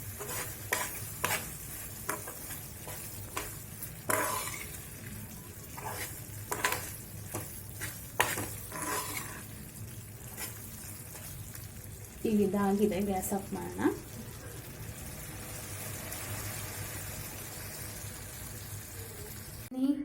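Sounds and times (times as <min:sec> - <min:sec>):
spoon scraping a pan: 0:00.0 - 0:05.0, 0:05.6 - 0:09.6, 0:10.3 - 0:11.4
low sizzle: 0:00.0 - 0:20.0.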